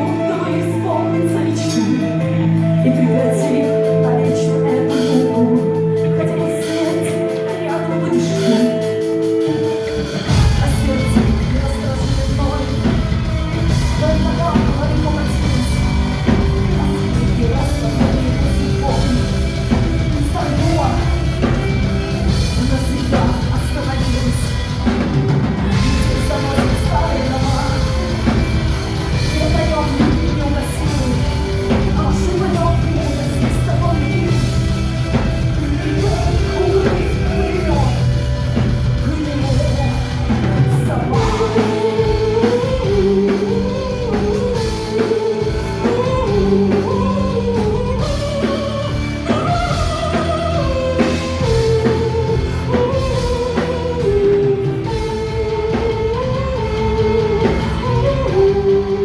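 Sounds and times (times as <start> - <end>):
distorted guitars: 0.0 - 59.0
drums: 0.0 - 59.0
person singing: 0.0 - 59.0.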